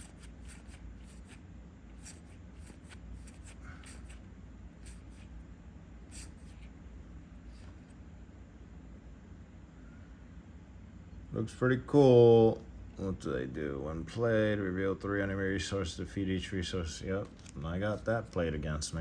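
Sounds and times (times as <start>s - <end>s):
cards rustling and ticking: 0.0s - 1.4s, 2.0s - 4.2s, 17.1s - 18.9s.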